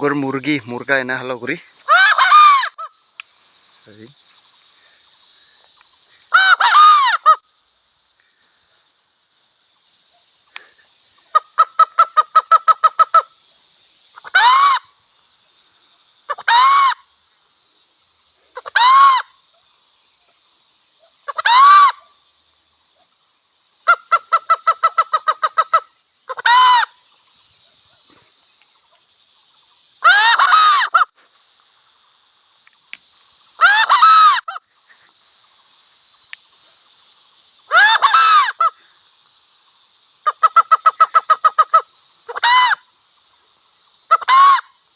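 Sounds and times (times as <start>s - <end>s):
high-pitched hiss: 0.0s - 44.9s
rooster calling: 1.9s - 2.9s, 6.3s - 7.4s.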